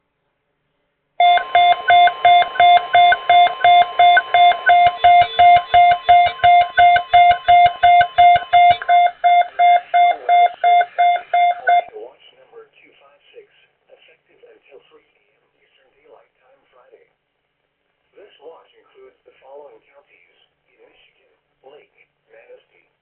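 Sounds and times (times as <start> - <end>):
steady alarm tone: 1.2 - 11.9
weather radio beeping alarm: 1.2 - 11.9.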